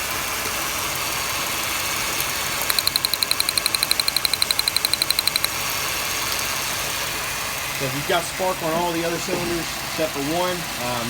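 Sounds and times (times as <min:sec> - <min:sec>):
rapid even ticking: 0:02.2 - 0:05.6.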